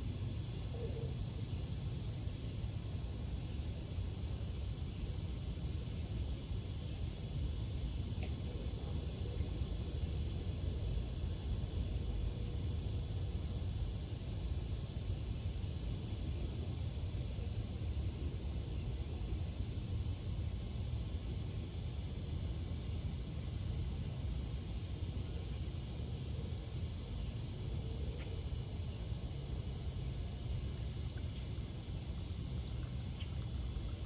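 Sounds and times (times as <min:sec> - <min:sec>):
low steady rumble: 0:28.7 - 0:34.0
insect trilling: 0:30.6 - 0:34.0.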